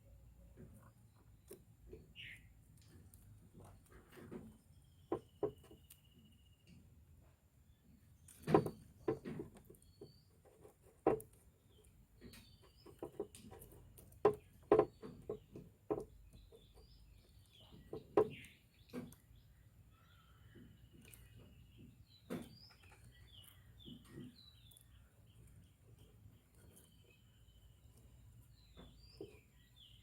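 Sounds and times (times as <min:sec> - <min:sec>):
faint birds chirping: 0:00.0 - 0:30.0
clicks and knocks of hand work: 0:08.2 - 0:19.4.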